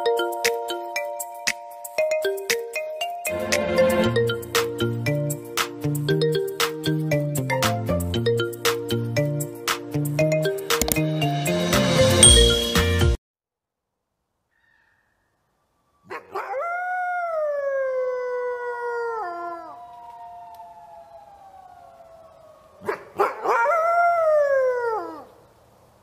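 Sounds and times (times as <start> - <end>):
wolves howling: 16.1 - 25.3.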